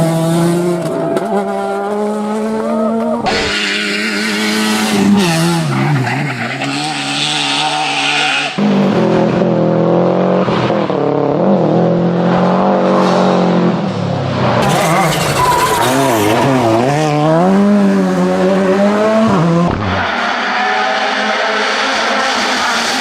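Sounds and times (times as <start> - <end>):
rally car engine revving: 0.0 - 23.0.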